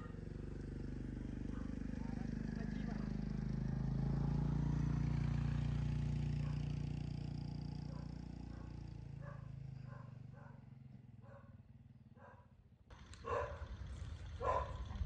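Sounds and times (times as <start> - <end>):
engine humming: 0.0 - 11.4, 12.9 - 15.0
dog barking: 1.5 - 2.2, 6.4 - 6.7, 7.8 - 10.6, 11.2 - 11.6, 12.2 - 12.6, 13.2 - 13.7, 14.4 - 15.0.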